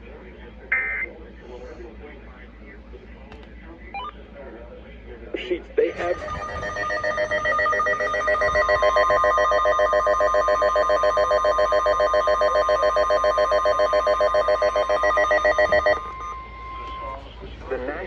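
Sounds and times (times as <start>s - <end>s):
steady high tone: 5.8s - 18.0s
alarm trilling rapidly: 5.9s - 17.3s.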